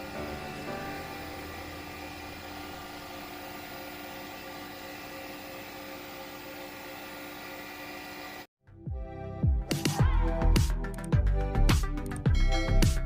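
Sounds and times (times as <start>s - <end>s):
ship machinery droning: 0.0s - 8.5s.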